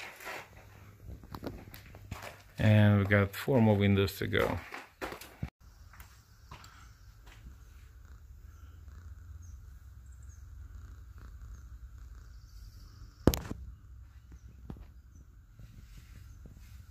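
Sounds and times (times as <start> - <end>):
steady low rumble: 7.1 - 16.9.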